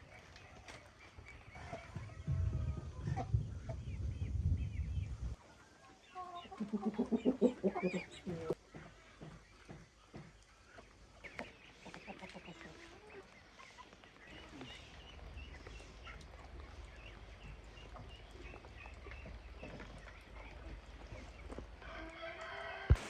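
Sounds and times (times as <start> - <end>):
chickens clucking: 0.0 - 23.0
steady low rumble: 1.7 - 5.4.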